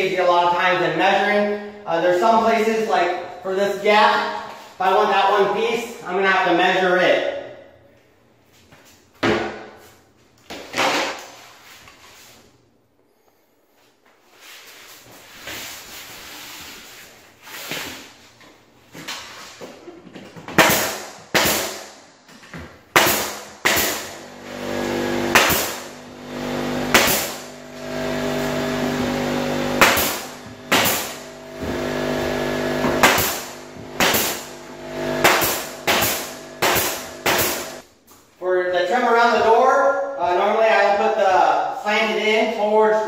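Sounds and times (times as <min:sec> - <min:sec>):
nails hammered into wood: 0:20.5 - 0:21.9, 0:22.9 - 0:24.2, 0:25.3 - 0:25.9, 0:26.9 - 0:27.5, 0:29.8 - 0:31.2, 0:32.9 - 0:34.5, 0:35.2 - 0:37.7.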